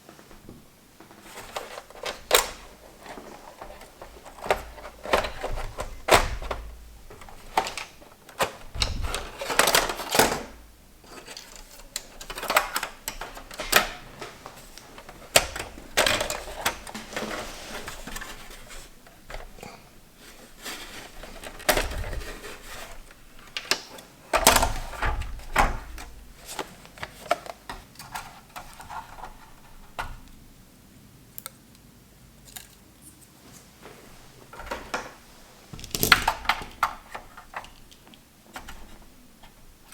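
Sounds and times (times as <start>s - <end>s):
scraping and rustling: 0.1s - 30.3s
plastic and metal parts clattering: 1.0s - 30.4s, 34.5s - 39.9s.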